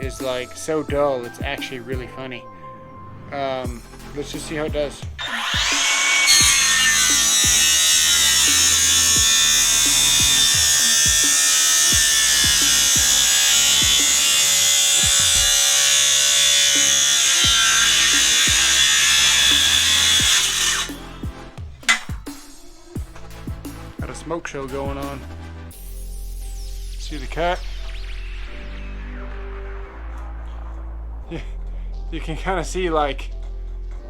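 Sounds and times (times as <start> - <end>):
background music with a beat: 0.0 - 2.1, 3.7 - 15.9, 16.7 - 31.0
circular saw cutting wood: 4.1 - 22.8, 26.2 - 29.5.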